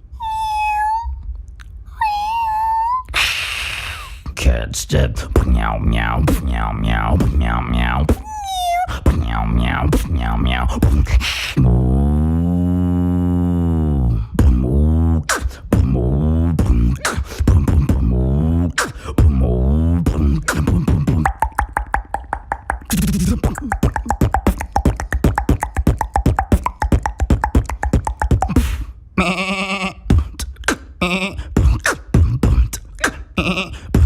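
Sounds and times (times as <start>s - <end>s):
beatboxing voice tones: 3.0s - 34.0s
beatboxed kick-drum beats: 4.3s - 8.3s, 8.9s - 12.0s, 14.0s - 28.9s, 30.1s - 34.0s
mouth clicks and snares: 16.6s - 18.0s, 20.1s - 28.9s, 31.6s - 33.3s.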